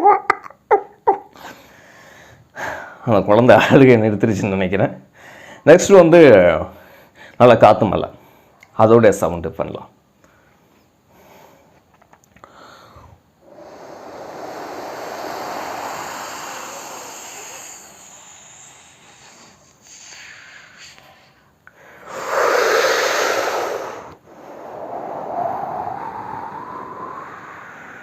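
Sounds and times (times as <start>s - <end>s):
person imitating wind and rain: 13.4s - 21.0s, 22.0s - 28.0s.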